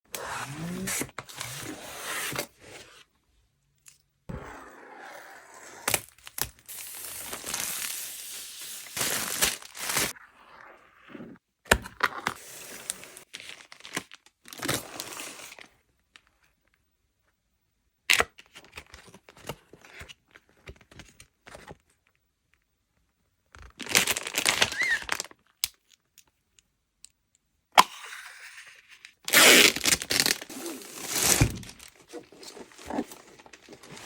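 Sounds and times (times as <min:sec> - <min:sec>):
packaging tearing and crinkling: 0:05.9 - 0:10.1, 0:23.8 - 0:25.3, 0:29.3 - 0:34.0.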